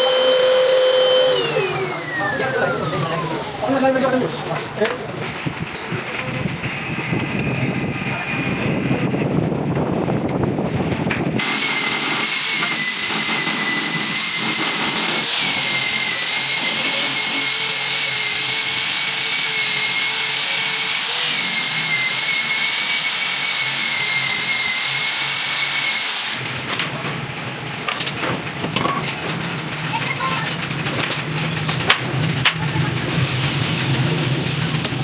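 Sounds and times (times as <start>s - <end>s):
router spindle whining: 0.0s - 5.2s, 11.4s - 26.4s.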